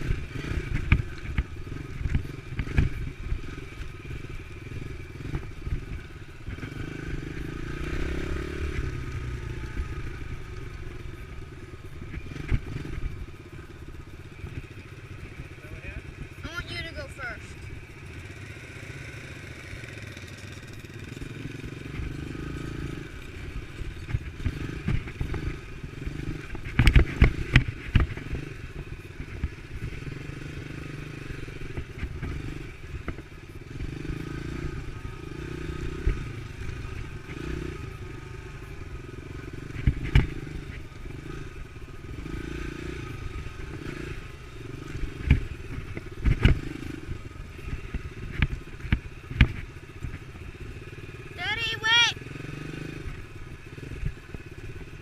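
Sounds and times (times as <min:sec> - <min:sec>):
dirt bike engine running: 0:00.0 - 0:55.0
thumps and clatter from bumps: 0:45.2 - 0:46.6, 0:47.8 - 0:50.3.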